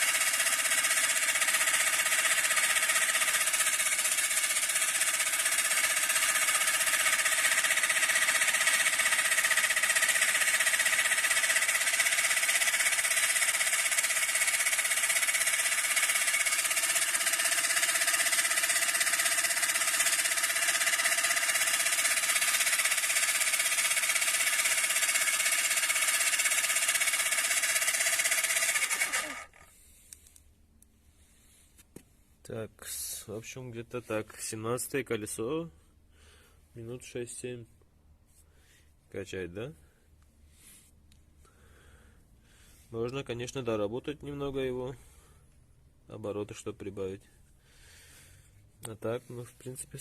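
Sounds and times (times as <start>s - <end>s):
compressor rattling buzz: 0.0s - 29.9s.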